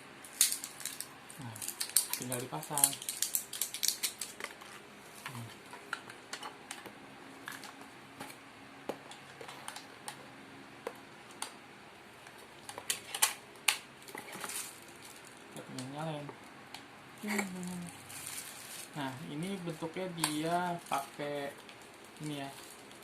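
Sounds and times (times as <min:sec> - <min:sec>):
plastic clicks and rattles of batteries: 0:00.3 - 0:04.6, 0:05.2 - 0:10.2, 0:12.6 - 0:14.7.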